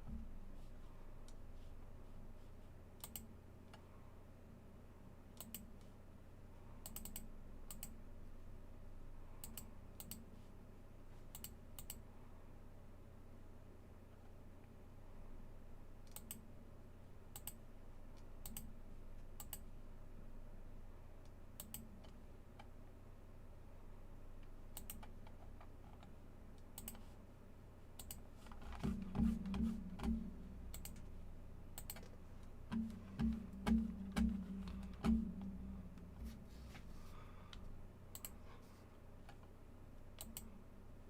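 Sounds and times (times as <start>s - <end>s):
scattered clicks: 3.0s - 3.8s, 6.8s - 8.0s, 9.4s - 10.2s, 11.3s - 12.0s, 16.0s - 16.4s, 17.3s - 17.6s, 18.2s - 18.7s, 19.3s - 19.6s, 21.2s - 22.7s, 24.4s - 27.0s, 28.0s - 31.1s, 31.8s - 36.3s, 37.5s - 38.4s, 40.2s - 40.5s
low thuds: 28.8s - 31.7s, 32.3s - 37.1s.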